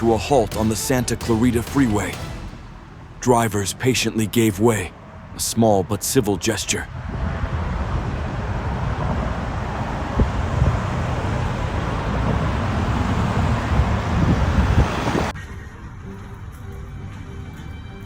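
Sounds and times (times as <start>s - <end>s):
faint music: 0.0s - 5.6s
freeway traffic: 0.0s - 15.4s.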